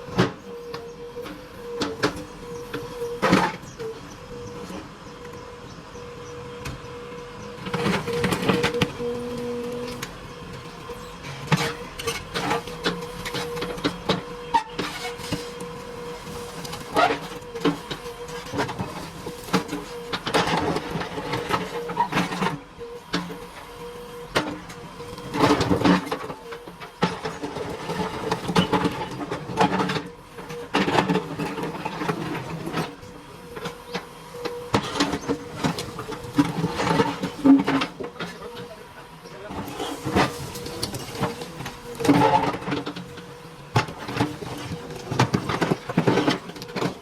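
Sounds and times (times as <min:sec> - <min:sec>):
backhoe loader engine whine: 0:00.0 - 0:47.0.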